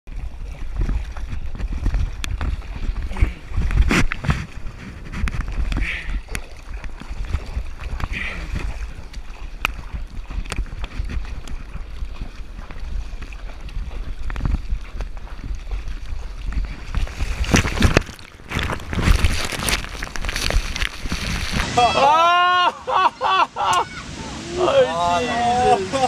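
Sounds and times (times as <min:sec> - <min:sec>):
wind buffeting microphone: 0:00.2 - 0:22.0
ocean surf rumbling: 0:19.1 - 0:26.0.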